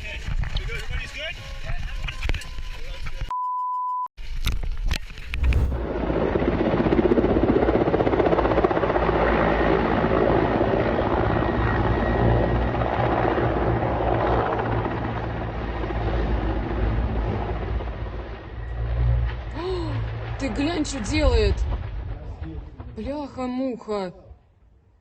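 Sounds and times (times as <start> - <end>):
helicopter rotor chopping: 5.3 - 18.5.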